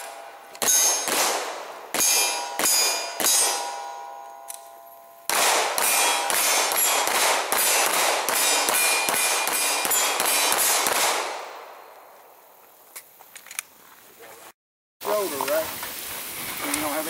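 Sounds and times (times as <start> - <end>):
handgun shots volley: 0.0 - 3.9, 5.3 - 11.6.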